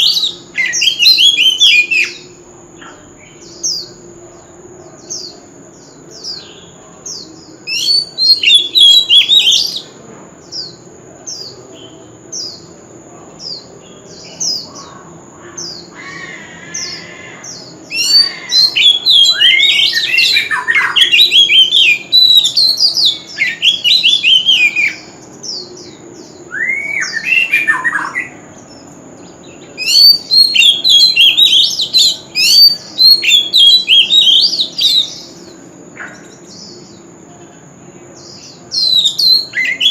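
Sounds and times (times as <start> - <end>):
bird singing whistled phrases: 0.0 - 2.3, 7.6 - 9.9, 16.0 - 28.4, 29.7 - 35.4, 38.5 - 39.9.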